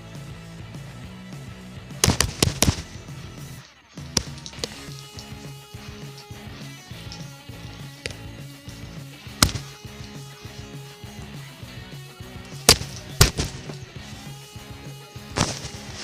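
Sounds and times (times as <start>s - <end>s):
sharp loud bangs: 2.0s - 3.1s, 9.4s - 9.8s, 12.6s - 13.8s.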